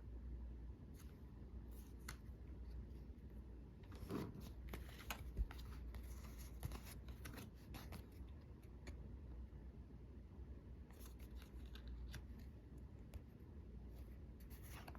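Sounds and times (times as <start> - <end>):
card rustle: 3.8 - 9.0, 10.9 - 12.6, 14.3 - 14.9
trading cards being flipped through: 4.2 - 9.0, 10.9 - 12.6.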